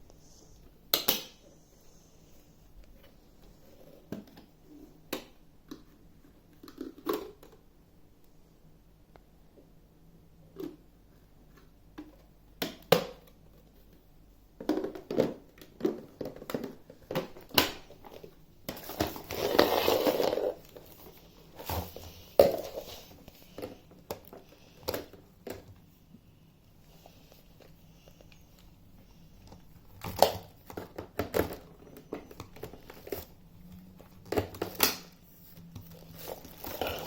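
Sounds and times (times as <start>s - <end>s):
packaging crinkling: 18.1s - 23.7s, 35.8s - 37.0s.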